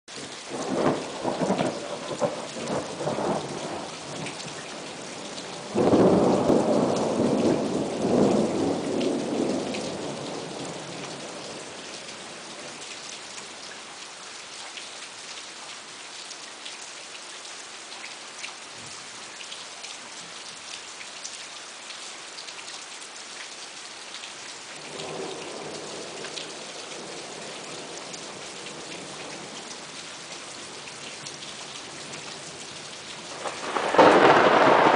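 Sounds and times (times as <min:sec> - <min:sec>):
heavy rain: 0:00.1 - 0:34.9
rolling thunder: 0:00.5 - 0:11.7, 0:33.3 - 0:34.9.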